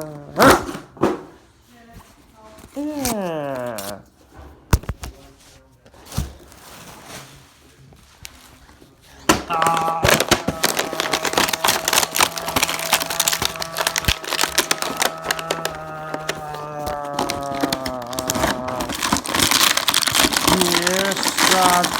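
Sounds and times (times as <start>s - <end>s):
plastic and cardboard crinkling: 4.8s - 21.9s.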